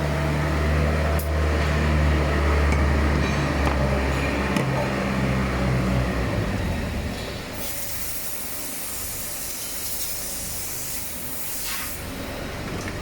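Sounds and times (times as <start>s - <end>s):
strong hiss of air: 7.5s - 12.3s.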